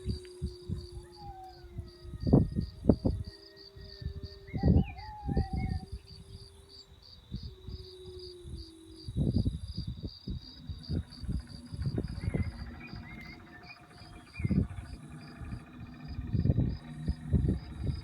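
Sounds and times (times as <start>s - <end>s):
crickets chirping: 0.0s - 18.0s
steady high whine: 0.0s - 18.0s
wavering sliding tones: 7.6s - 18.0s
low rumbles: 9.2s - 18.0s.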